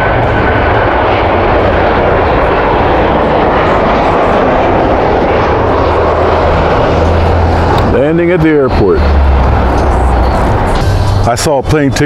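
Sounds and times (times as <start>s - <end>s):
airliner engines rushing: 0.0s - 12.0s.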